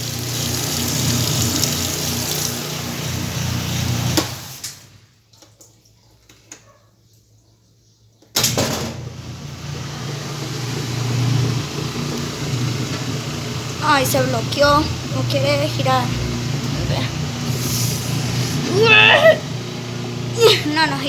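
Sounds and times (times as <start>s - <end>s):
rushing water: 0.0s - 3.1s
washing machine running: 0.0s - 5.0s, 8.4s - 21.0s.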